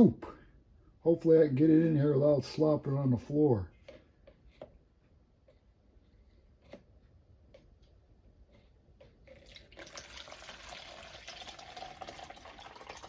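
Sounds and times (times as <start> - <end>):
liquid pouring and trickling: 9.3 - 13.0.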